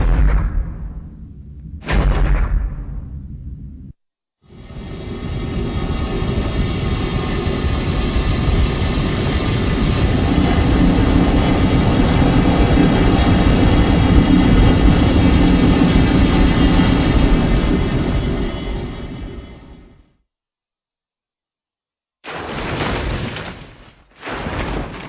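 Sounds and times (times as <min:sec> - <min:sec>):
dense loud rumbling: 0:00.0 - 0:20.0
steady low hum: 0:02.5 - 0:20.0.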